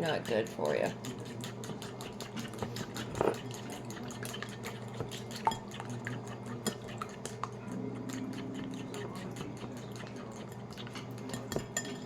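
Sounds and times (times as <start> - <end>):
metal utensil clinking on dish: 10.3 - 12.0.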